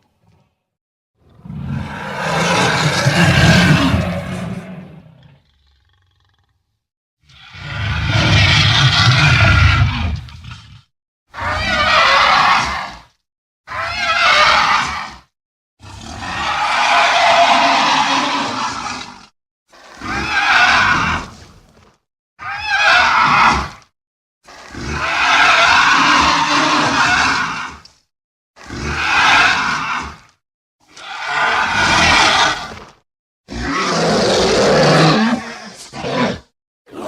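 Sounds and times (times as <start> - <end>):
monster roar with whinny-like pitch: 1.2 - 6.0, 7.3 - 13.0, 15.8 - 19.3, 24.6 - 27.8, 28.6 - 30.3, 31.0 - 32.8, 33.5 - 37.0
monster growling roar: 1.2 - 6.6, 7.4 - 13.0, 15.8 - 19.2, 24.5 - 27.8, 28.6 - 30.3, 31.0 - 32.8, 33.5 - 37.0
monster cries: 2.1 - 4.6.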